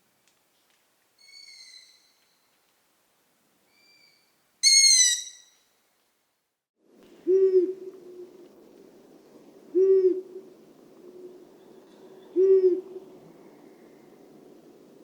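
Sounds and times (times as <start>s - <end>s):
faint high owl whistle: 1.2s - 2.2s
high squeaky owl call: 1.2s - 2.4s, 3.7s - 5.6s
low owl hoot: 7.2s - 8.5s, 9.6s - 13.8s.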